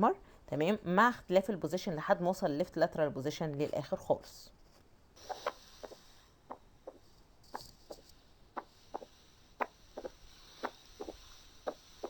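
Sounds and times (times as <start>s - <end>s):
heartbeat through stethoscope: 5.2s - 12.0s.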